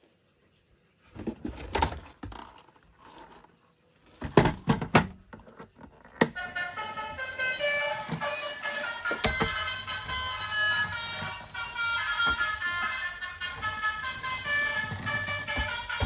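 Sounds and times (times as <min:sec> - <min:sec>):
sharp knocks and rattles: 0:06.3 - 0:16.0.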